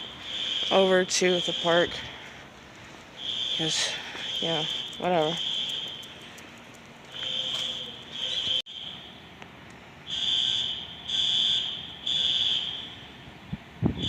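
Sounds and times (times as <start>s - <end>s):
fire alarm pulsing tone: 0.0s - 2.2s, 3.2s - 6.2s, 7.1s - 9.2s, 10.1s - 13.2s.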